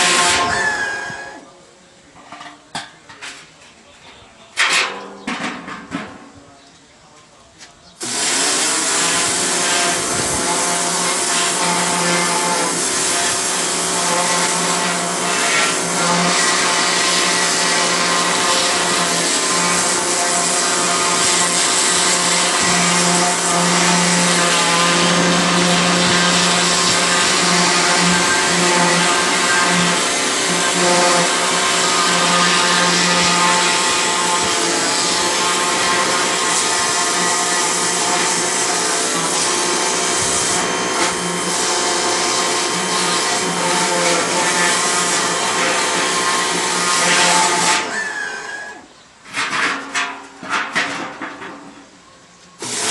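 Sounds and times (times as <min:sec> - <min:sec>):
machine hissing whir: 0:08.0 - 0:48.8.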